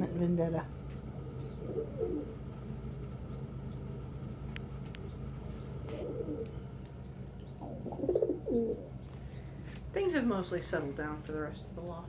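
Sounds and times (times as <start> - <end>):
pigeons cooing: 1.2 - 4.0, 5.0 - 9.7.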